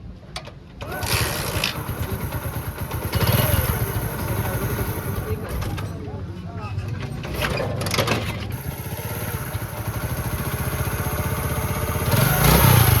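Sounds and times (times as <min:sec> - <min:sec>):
motorcycle engine idling: 0:00.9 - 0:05.9, 0:08.4 - 0:13.0.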